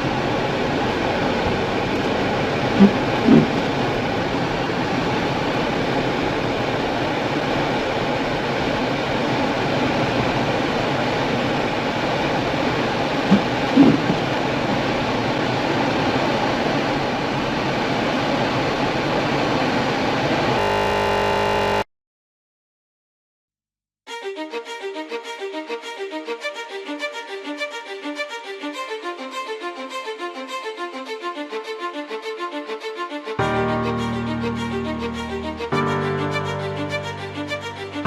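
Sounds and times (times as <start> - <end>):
tyre engine and wind noise in cabin: 0.0 - 21.7.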